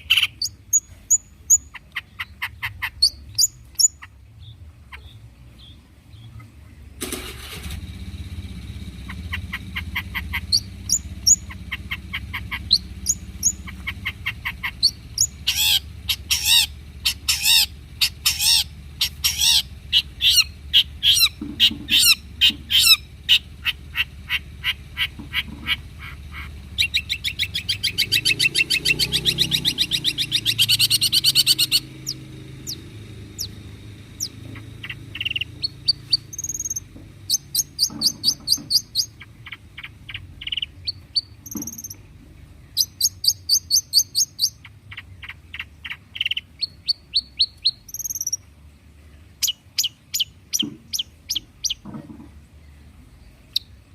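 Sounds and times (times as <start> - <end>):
bird singing chirps and whistles: 0.0 - 4.0, 9.7 - 25.1, 26.8 - 33.6, 34.2 - 42.0, 42.8 - 48.4
steady low hum: 0.0 - 53.9.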